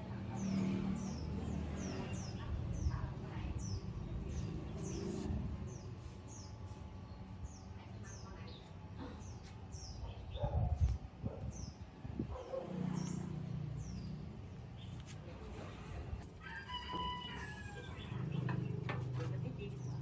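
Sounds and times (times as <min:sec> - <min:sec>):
small birds chirping: 0:00.0 - 0:20.0
rooster crowing: 0:16.4 - 0:18.3.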